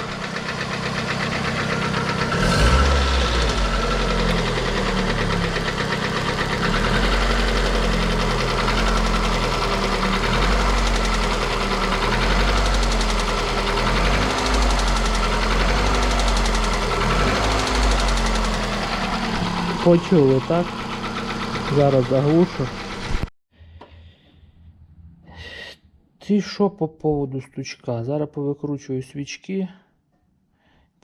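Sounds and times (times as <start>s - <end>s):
car engine revving with knock: 0.0s - 23.3s.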